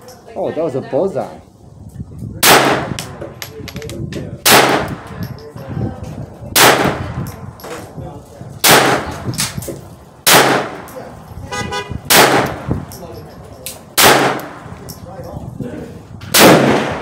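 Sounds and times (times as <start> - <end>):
pistol shots: 2.4 - 3.2, 4.4 - 5.1, 6.6 - 7.2, 8.6 - 9.6, 10.2 - 11.0, 12.1 - 12.7, 14.0 - 14.6, 16.3 - 17.0.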